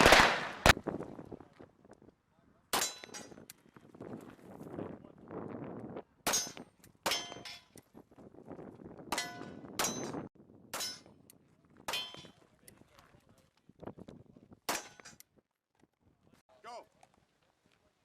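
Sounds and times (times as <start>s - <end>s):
pistol shots: 0.0s - 0.8s
metallic target clang: 2.7s - 3.4s, 6.3s - 7.7s, 9.1s - 11.1s, 11.9s - 12.4s, 14.7s - 15.2s.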